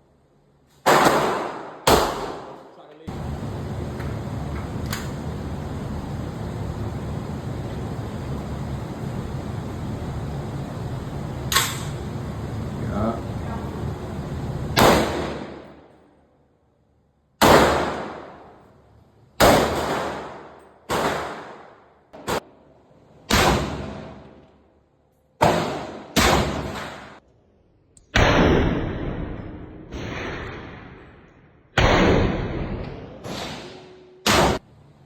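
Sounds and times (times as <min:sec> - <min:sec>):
gunshots with echo: 0:00.9 - 0:02.6, 0:14.8 - 0:15.7, 0:31.8 - 0:34.6.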